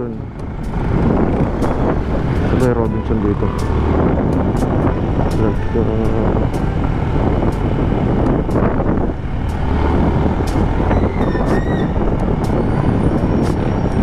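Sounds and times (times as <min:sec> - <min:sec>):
motorcycle engine and exhaust: 0:00.0 - 0:14.0
road and wind noise: 0:00.0 - 0:14.0
brief high squeal: 0:10.8 - 0:12.0.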